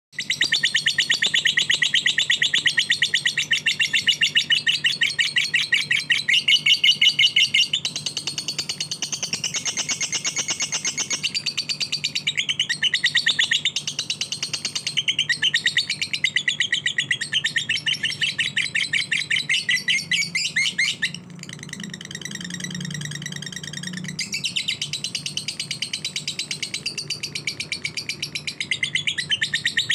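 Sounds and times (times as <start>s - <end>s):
lovebird shrill chirping song: 0.2s - 29.9s.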